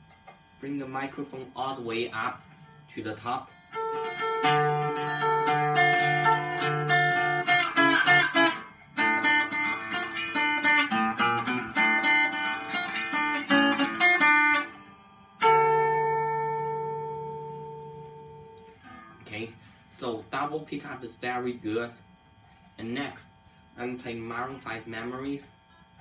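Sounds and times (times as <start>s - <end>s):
acoustic guitar chords: 0.7s - 21.1s.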